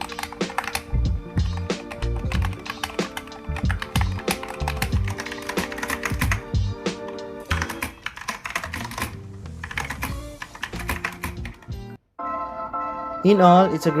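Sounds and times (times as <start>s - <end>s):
mechanical keyboard typing: 0.0s - 6.6s, 7.5s - 11.7s
background music: 0.0s - 14.0s.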